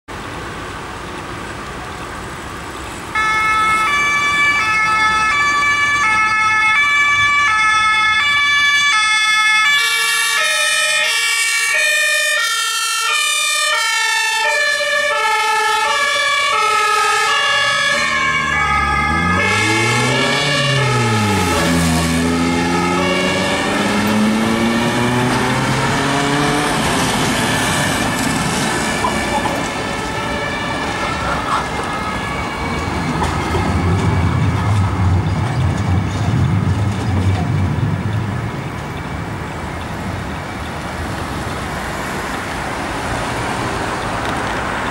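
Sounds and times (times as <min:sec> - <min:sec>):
two-tone emergency siren: 0:03.1 - 0:41.2
air horns: 0:28.9 - 0:33.4.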